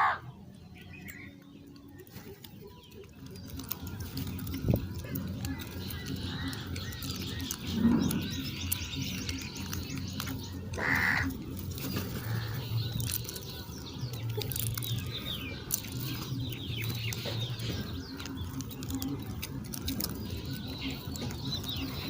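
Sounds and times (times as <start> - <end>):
harsh caw-like bird call: 10.8 - 11.3.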